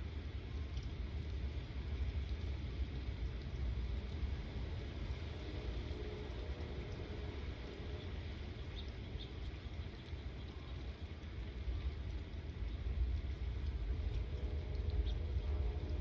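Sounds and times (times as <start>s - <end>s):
thunder rumble: 11.5s - 16.0s.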